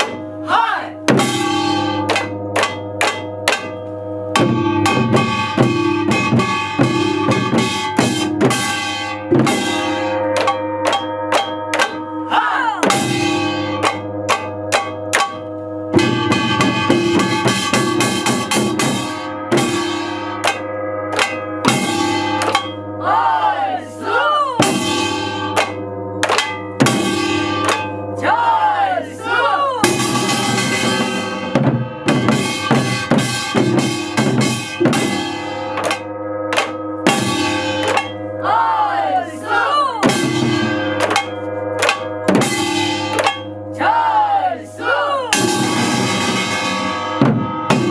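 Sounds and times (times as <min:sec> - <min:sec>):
drum kit snare and cymbals: 0:04.4 - 0:12.0, 0:16.0 - 0:22.8, 0:29.8 - 0:38.2, 0:40.0 - 0:43.5, 0:45.3 - 0:47.9.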